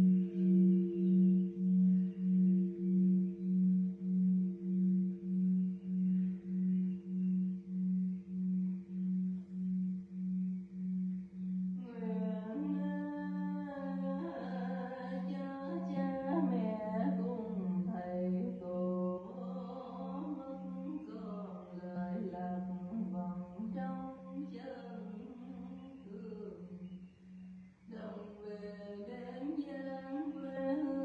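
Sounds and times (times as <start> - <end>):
low pulsing drone: 0.0 - 23.8
person chanting: 0.0 - 27.0, 27.9 - 31.0.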